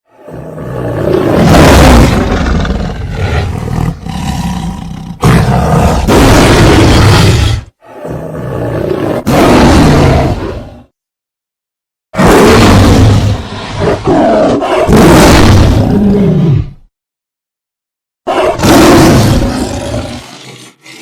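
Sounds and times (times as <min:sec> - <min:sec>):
big cat roaring: 0:00.1 - 0:10.9, 0:12.2 - 0:16.9, 0:18.3 - 0:21.0.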